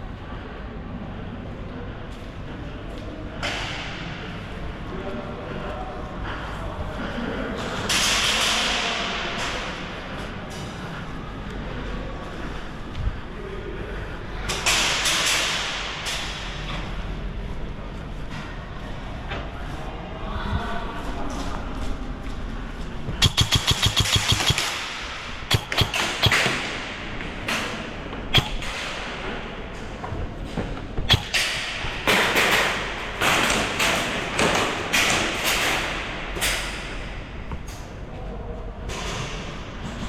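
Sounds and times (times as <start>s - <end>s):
airsoft gun full-auto burst: 23.2s - 26.5s, 31.1s - 31.5s
sharp single airsoft shots: 23.2s - 26.7s, 28.3s - 29.0s, 31.1s - 31.8s.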